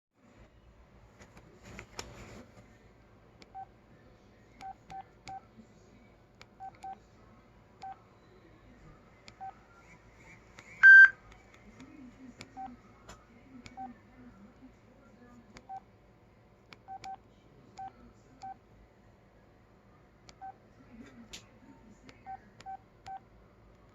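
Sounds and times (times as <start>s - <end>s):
higher beep tone: 10.8s - 11.1s
phone keypad beeps: 10.8s - 11.2s, 16.9s - 17.2s.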